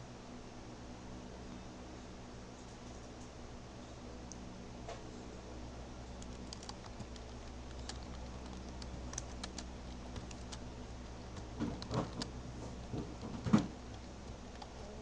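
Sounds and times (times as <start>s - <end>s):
low steady hum: 0.0s - 15.0s
computer keyboard typing: 6.0s - 15.0s.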